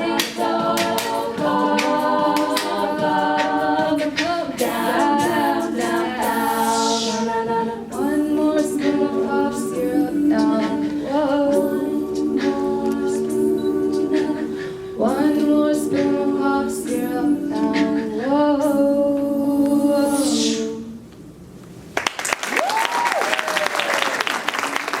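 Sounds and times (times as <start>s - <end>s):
a cappella group singing harmony: 0.0s - 21.1s
audience applauding: 22.0s - 25.0s
person cheering woo: 22.5s - 24.2s.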